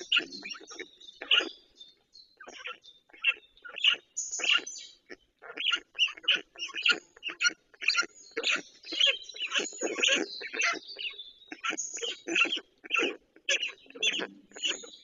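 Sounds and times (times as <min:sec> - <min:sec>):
birds calling raspy notes: 0:00.0 - 0:15.0.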